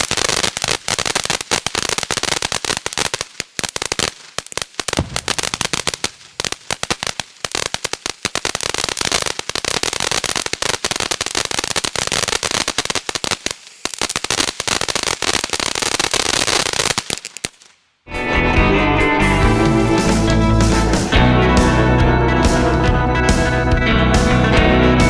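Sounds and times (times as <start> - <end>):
firework crackling: 0.0 - 17.9
rock music with guitar: 18.1 - 25.0.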